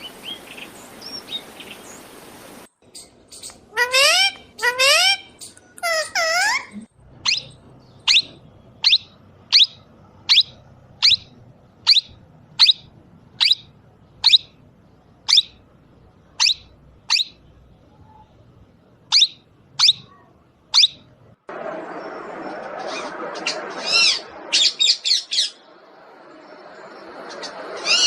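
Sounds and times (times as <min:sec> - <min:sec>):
parrot high-pitched calls: 0:03.7 - 0:14.6, 0:15.2 - 0:15.6, 0:16.4 - 0:17.4, 0:19.1 - 0:21.0, 0:22.8 - 0:25.6, 0:27.3 - 0:28.0.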